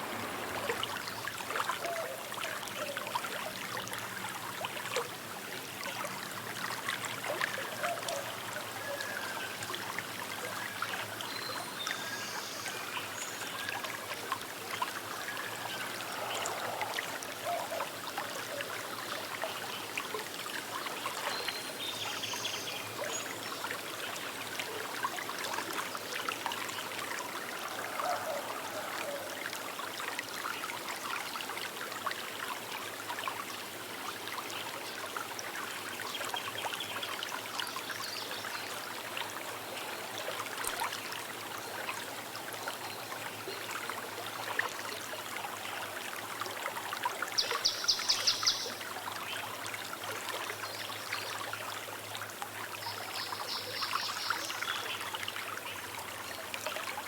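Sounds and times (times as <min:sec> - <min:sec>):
river babbling over stones: 0:00.0 - 0:07.8, 0:12.6 - 0:57.0.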